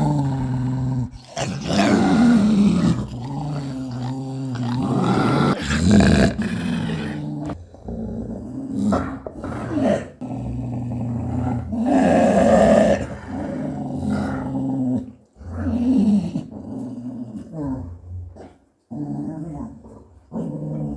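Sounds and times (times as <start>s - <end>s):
dog growling: 0.0s - 20.9s.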